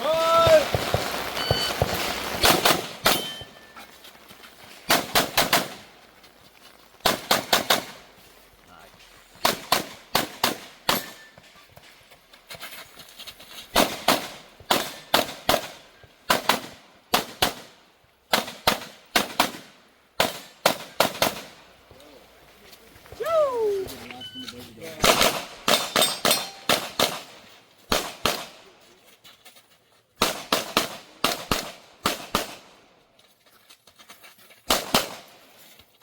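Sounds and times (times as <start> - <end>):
pistol shots: 0.6 - 3.6, 25.0 - 28.6, 30.2 - 32.7, 34.7 - 35.3.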